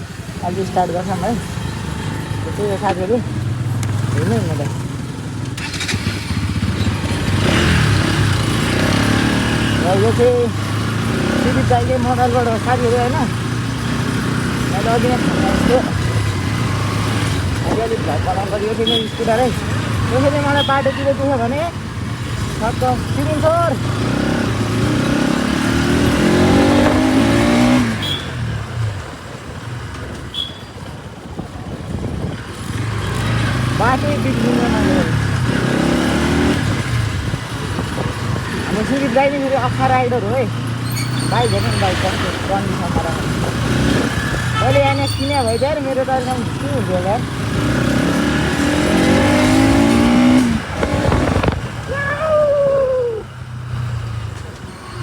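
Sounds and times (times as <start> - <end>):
wind and road rush: 0.0 - 55.0
motorcycle engine accelerating: 0.1 - 30.1, 31.8 - 54.6.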